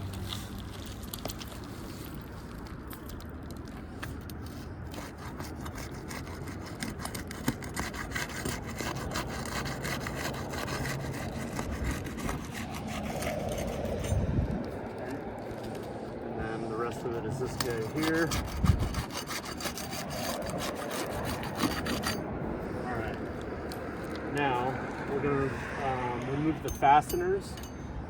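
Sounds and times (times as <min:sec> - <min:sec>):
tool scraping under roof shingles: 0:03.8 - 0:16.1, 0:16.9 - 0:22.3.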